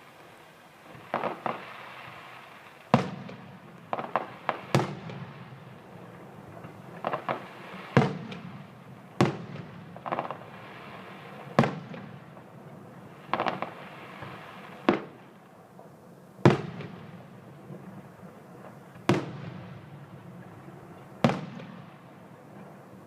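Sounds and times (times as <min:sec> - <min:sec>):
fireworks banging and crackling: 0:00.0 - 0:23.0.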